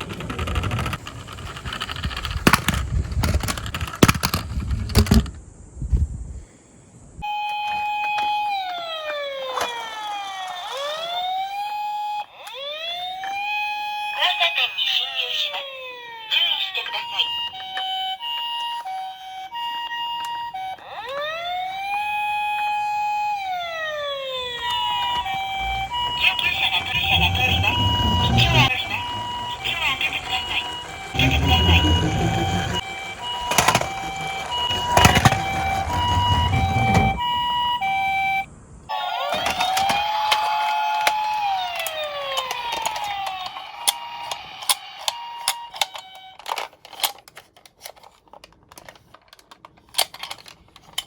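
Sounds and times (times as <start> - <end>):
toy siren two-tone and wail: 7.2 - 47.2.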